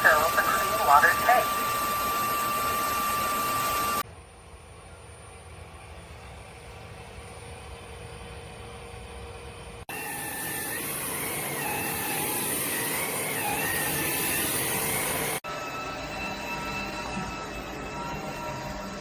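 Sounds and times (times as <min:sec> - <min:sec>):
motor whining: 0:00.0 - 0:04.0.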